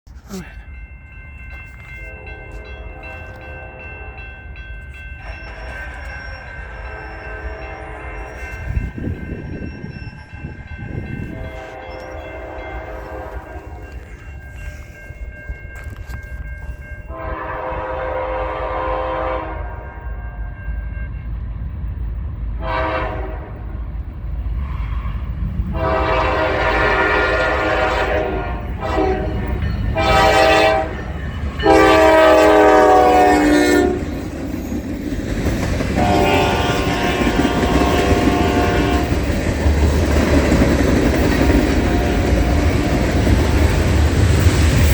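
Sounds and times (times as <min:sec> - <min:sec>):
train rumbling: 0:00.1 - 0:44.9
locomotive air horn blasts: 0:02.0 - 0:04.4, 0:06.8 - 0:08.5, 0:11.2 - 0:14.0, 0:17.1 - 0:20.2, 0:22.6 - 0:23.8, 0:25.7 - 0:34.2, 0:36.0 - 0:39.2.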